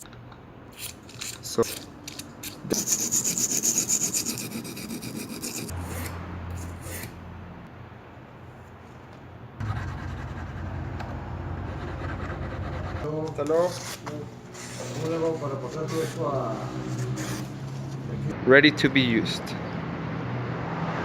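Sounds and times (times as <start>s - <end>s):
knife blade scraping: 0.7s - 7.2s, 12.3s - 18.1s.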